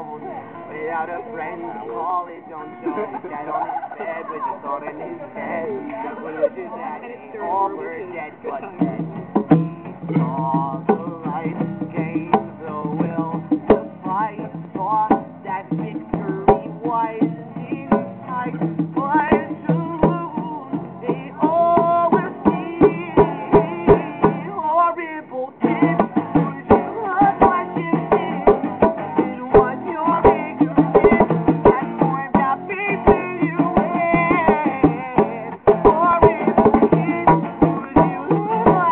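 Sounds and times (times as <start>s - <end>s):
acoustic guitar: 0.0s - 38.9s
percussion hits: 25.7s - 38.9s.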